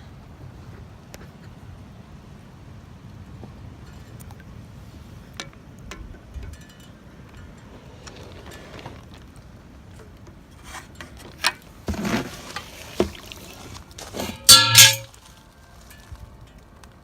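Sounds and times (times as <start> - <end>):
water sloshing and splashing: 10.8 - 15.4.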